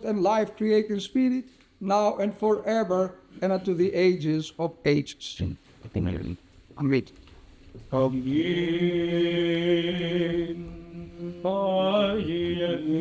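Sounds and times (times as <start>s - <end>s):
man chanting a hymn: 7.9s - 13.0s.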